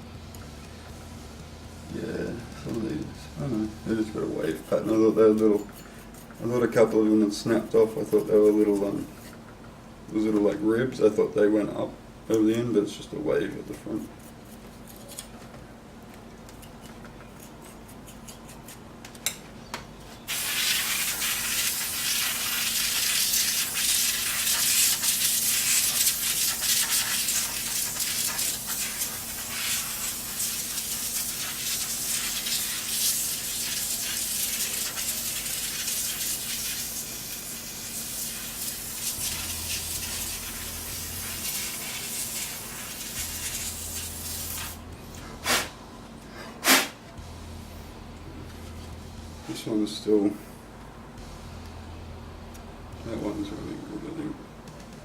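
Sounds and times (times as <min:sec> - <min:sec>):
fan air rushing: 0:00.0 - 0:14.9, 0:15.6 - 0:55.0
computer fan low hum: 0:00.0 - 0:18.1, 0:33.4 - 0:46.4, 0:47.0 - 0:55.0.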